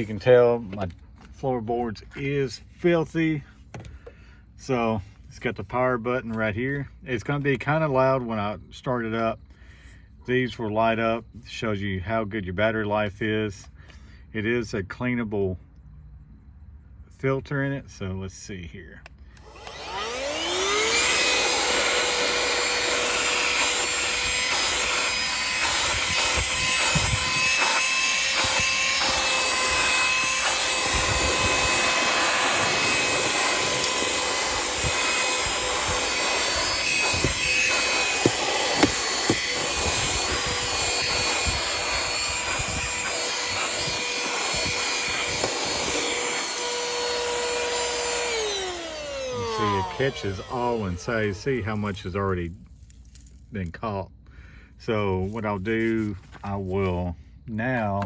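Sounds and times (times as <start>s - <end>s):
handheld vacuum whining: 19.4s - 52.0s
grit rattling up vacuum nozzle: 21.0s - 53.6s.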